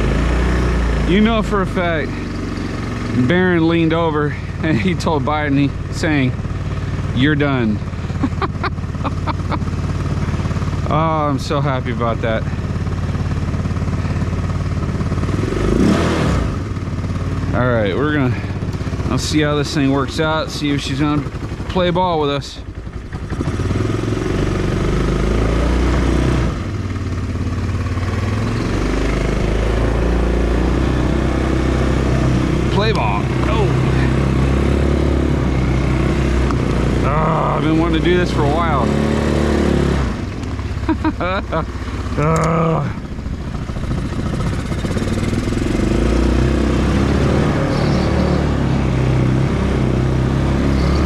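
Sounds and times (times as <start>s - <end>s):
atv engine running: 0.0s - 51.0s.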